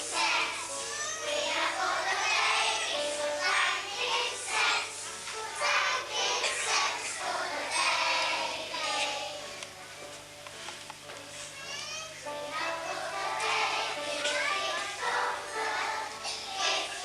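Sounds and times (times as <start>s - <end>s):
children singing to music: 0.0s - 10.2s, 12.2s - 17.0s
faint electrical hum: 0.0s - 17.0s.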